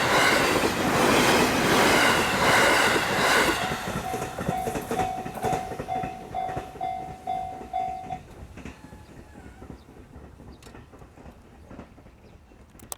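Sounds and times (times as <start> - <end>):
train rumble and wheel clicks: 0.0 - 12.9
level-crossing alarm bell ringing: 2.0 - 8.4.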